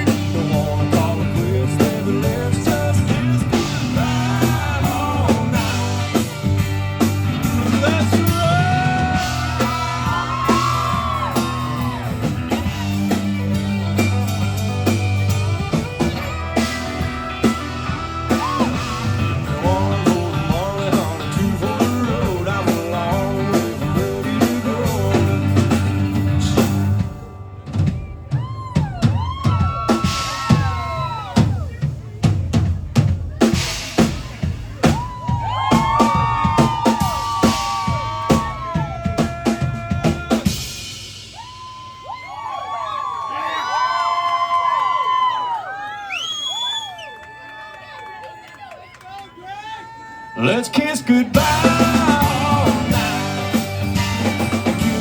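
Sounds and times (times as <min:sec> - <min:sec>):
guitar with sliding notes: 0:00.0 - 0:28.1, 0:51.3 - 0:55.0
bending lead melody: 0:00.0 - 0:29.1, 0:51.3 - 0:55.0
live country band: 0:00.0 - 0:45.0, 0:49.8 - 0:55.0
bass: 0:00.0 - 0:48.0, 0:49.1 - 0:55.0
drums: 0:00.0 - 0:55.0.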